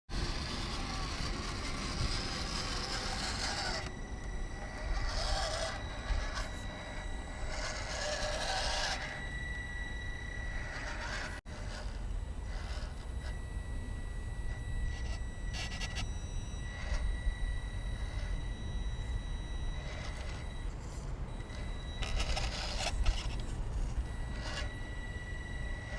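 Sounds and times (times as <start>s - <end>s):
electric motor whine: 0.1s - 25.9s
scraping and rubbing on rough ground: 4.6s - 9.2s, 19.8s - 24.8s.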